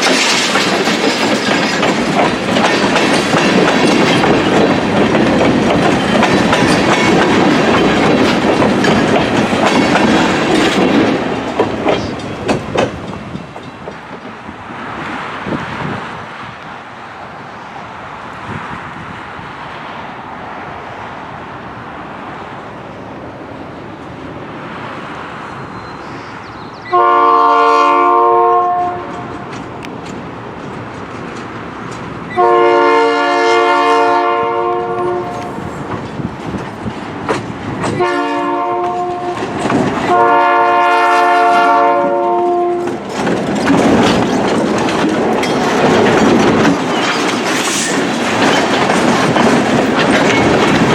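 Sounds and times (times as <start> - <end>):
wheels clattering over rail joints: 0.0 - 15.7, 28.6 - 32.6, 35.3 - 40.8, 41.9 - 50.9
locomotive horn: 26.8 - 29.4, 32.3 - 35.6, 37.9 - 39.5, 40.1 - 43.0
locomotive engine rumble: 34.1 - 50.9.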